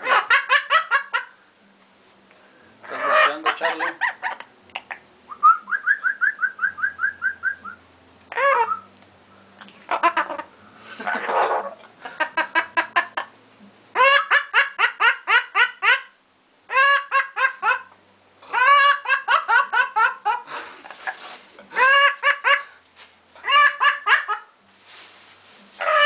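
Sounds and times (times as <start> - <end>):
parrot squawking: 2.8 - 5.0, 8.3 - 8.9, 9.9 - 10.5, 11.2 - 11.8, 13.9 - 17.9, 18.5 - 20.4, 21.7 - 22.7, 23.4 - 24.5, 25.8 - 26.0.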